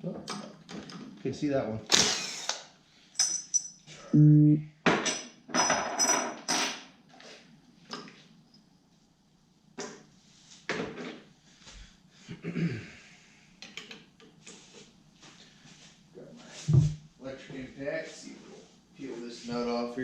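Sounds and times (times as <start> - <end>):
metal tools clinking: 3.2 - 3.9, 5.1 - 6.6.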